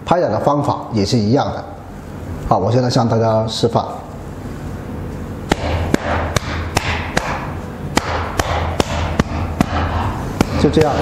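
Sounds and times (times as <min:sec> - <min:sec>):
hand patting chest: 0:05.5 - 0:11.0.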